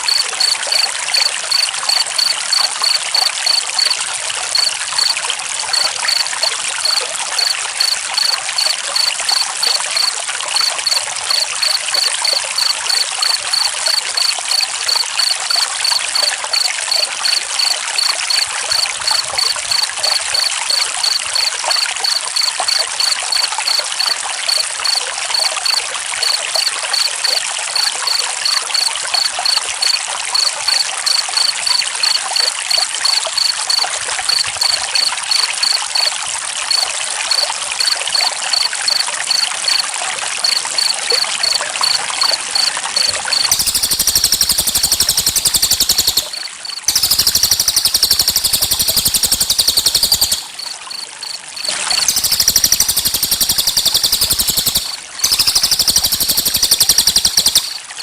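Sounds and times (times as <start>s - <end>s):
cricket chirping: 0.0s - 58.0s
water flowing: 0.0s - 58.0s.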